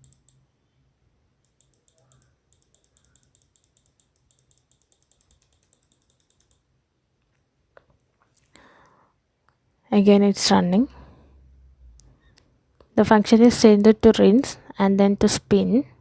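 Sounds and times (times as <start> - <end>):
computer keyboard clicking: 0.0 - 0.4, 1.4 - 6.6.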